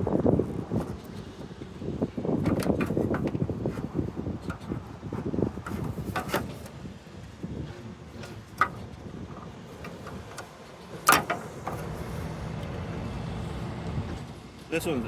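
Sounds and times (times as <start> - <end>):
low vehicle rumble: 9.7 - 15.0.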